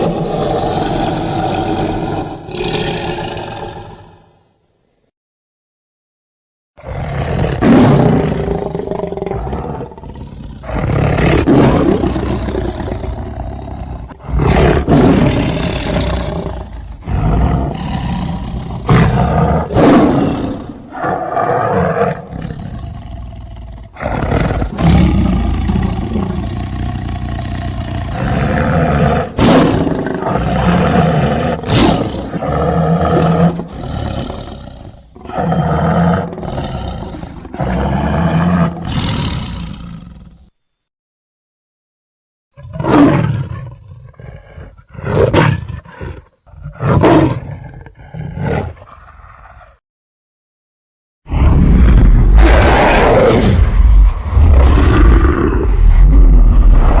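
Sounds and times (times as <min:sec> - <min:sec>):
monster roars: 0:00.0 - 0:04.4, 0:06.8 - 0:40.4, 0:51.3 - 0:57.0.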